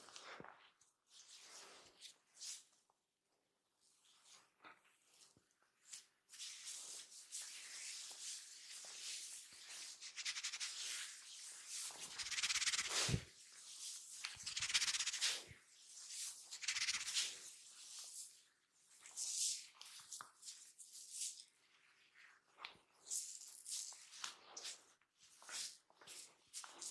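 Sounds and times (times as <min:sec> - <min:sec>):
hands rubbing over skin: 0:06.4 - 0:15.5, 0:16.1 - 0:18.1.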